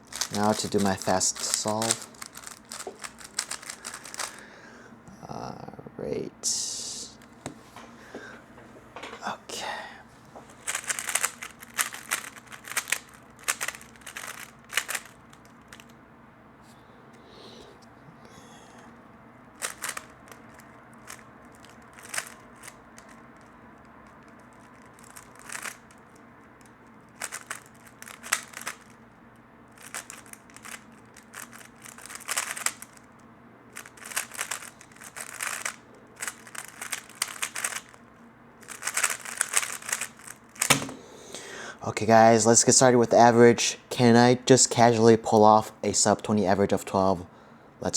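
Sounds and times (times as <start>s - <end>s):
puzzle cube layers clicking: 10.7s - 15.9s, 29.8s - 32.9s, 33.8s - 38.0s, 38.7s - 40.8s.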